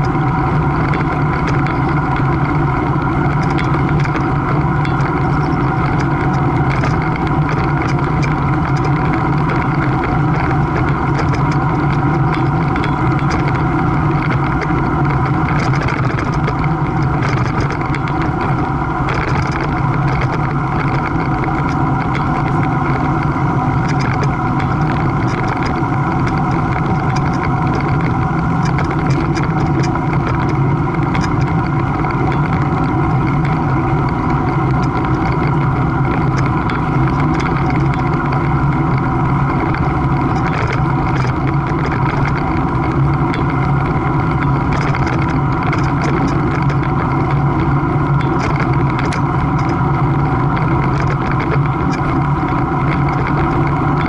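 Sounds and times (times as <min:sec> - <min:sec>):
steady mechanical drone: 0:00.0 - 0:54.0.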